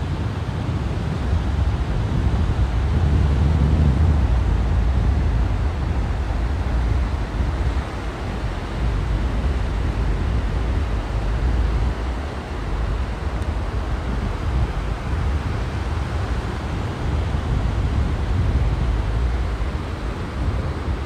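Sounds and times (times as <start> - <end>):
sea surf washing in: 0.0 - 21.0
wind rumbling on microphone: 0.0 - 21.0.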